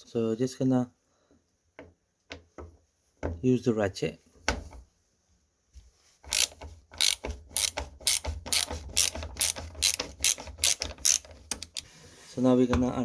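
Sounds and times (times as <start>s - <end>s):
ratchet clicking: 6.3s - 11.8s.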